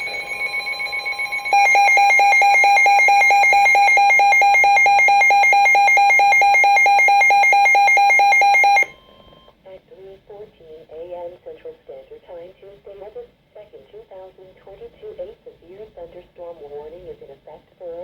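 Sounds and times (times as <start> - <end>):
rapid electronic alarm beeping: 0.0 - 9.0
faint steady warning tone: 0.0 - 9.6.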